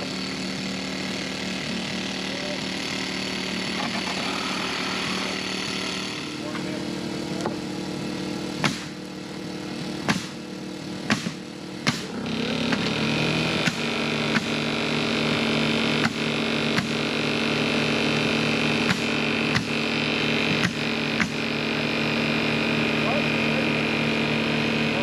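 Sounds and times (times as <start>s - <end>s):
small engine running: 0.0s - 25.0s.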